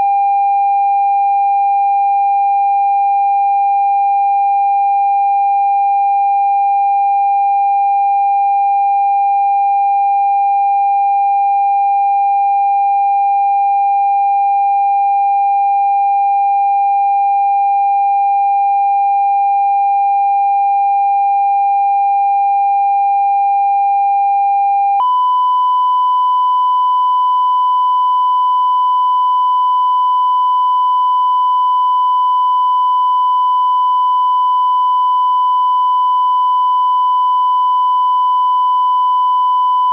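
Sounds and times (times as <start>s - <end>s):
electronic test tone: 24.8s - 39.9s.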